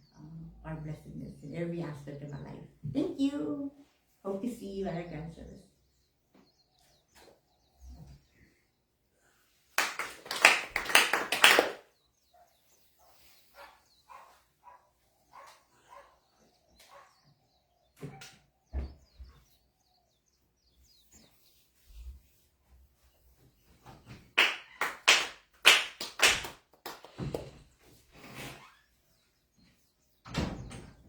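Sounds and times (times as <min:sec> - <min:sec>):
hand clapping: 0:09.8 - 0:11.8, 0:24.4 - 0:27.6.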